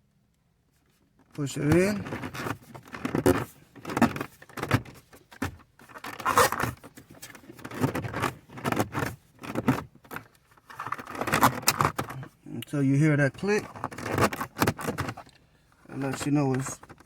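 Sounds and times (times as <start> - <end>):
plastic scraping and knocking: 1.6 - 12.2, 13.4 - 15.3, 15.9 - 17.0.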